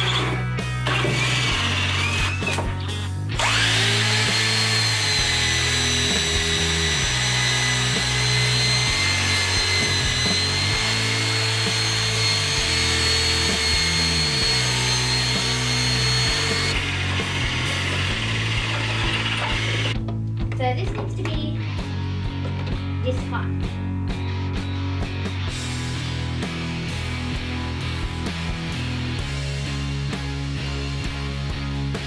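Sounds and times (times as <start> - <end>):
electric drill whining: 0.0 - 20.0
background music with bass line: 0.0 - 32.0.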